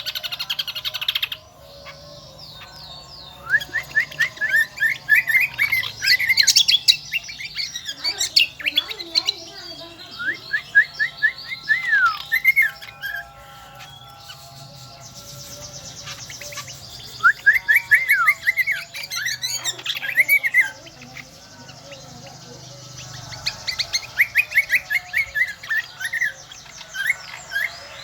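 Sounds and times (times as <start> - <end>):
songbird chirping and whistling: 0.0 - 28.0.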